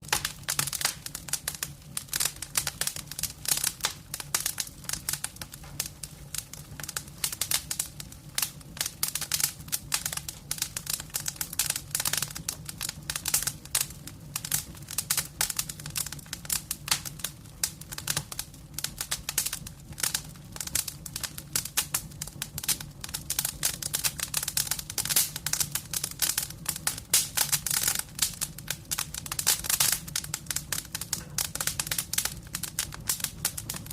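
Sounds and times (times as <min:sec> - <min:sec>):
wood fire crackling: 0:00.0 - 0:33.9.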